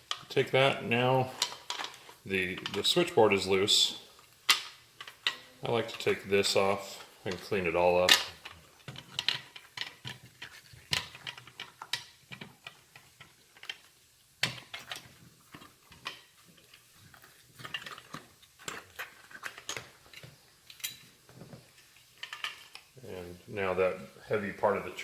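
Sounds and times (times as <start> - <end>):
small metal parts clicking: 1.3 - 3.2, 7.0 - 16.3, 17.2 - 21.2, 22.2 - 23.0.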